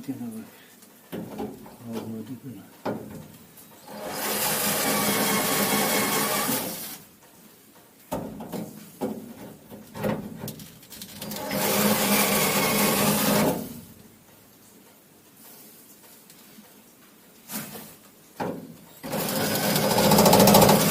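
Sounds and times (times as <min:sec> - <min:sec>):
electric drill spinning: 0:03.9 - 0:07.0, 0:11.3 - 0:13.6, 0:19.0 - 0:20.9.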